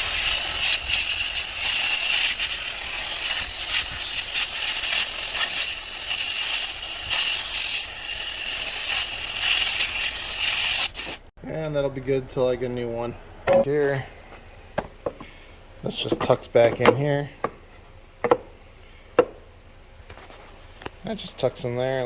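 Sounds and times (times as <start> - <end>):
compressed air hissing from hose: 0.0 - 11.3.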